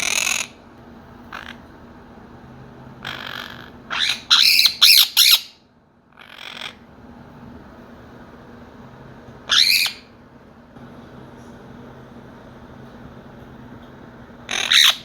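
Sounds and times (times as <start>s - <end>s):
parrots squawking: 0.0s - 0.6s, 1.2s - 1.7s, 3.0s - 5.6s, 6.2s - 6.9s, 9.5s - 10.1s, 14.5s - 15.0s.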